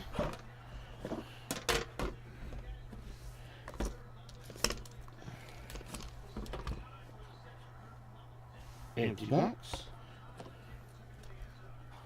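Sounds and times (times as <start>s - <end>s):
low electrical hum: 0.0s - 12.0s
clicks and taps of card packs: 3.7s - 6.9s.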